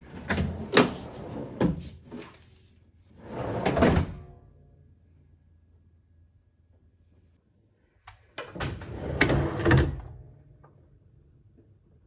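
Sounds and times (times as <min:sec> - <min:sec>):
drawer rolling on slide rails: 0:00.0 - 0:02.4, 0:03.2 - 0:04.1, 0:08.7 - 0:10.0.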